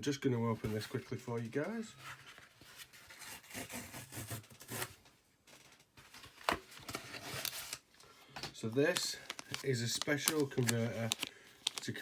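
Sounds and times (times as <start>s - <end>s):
plastic and paper rustling: 5.4s - 12.0s.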